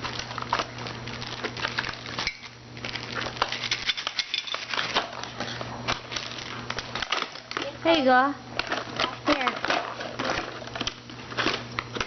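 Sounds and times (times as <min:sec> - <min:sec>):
plastic toy pieces clattering: 0:00.0 - 0:07.8, 0:08.6 - 0:12.0.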